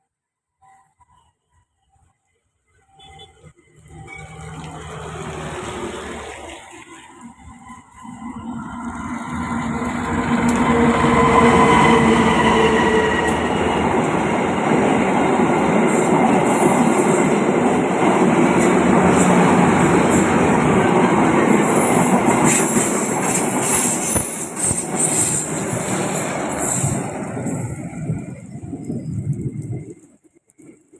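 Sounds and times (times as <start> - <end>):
train wheels rumbling on rails: 2.8 - 30.9
train wheels squealing: 7.2 - 14.3, 15.8 - 20.6, 21.4 - 29.9.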